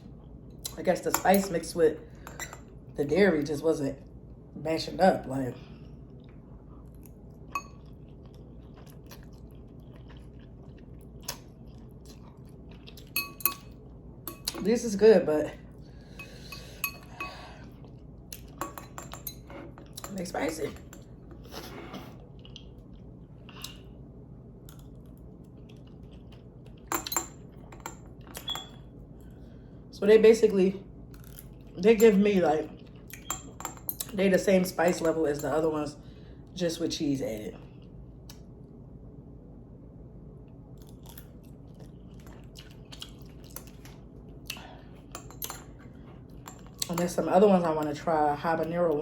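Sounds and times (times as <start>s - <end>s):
utensils clinking against dish: 2.2s - 2.7s, 13.2s - 13.7s, 16.2s - 17.4s, 45.1s - 47.2s
chewing noodles: 6.0s - 13.2s, 24.7s - 26.9s, 40.8s - 45.1s.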